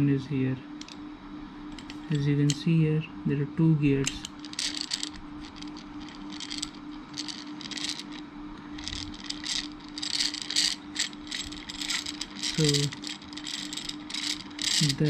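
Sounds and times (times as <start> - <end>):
hand drill gears clicking: 1.8 - 2.6, 4.1 - 8.2, 8.8 - 15.0.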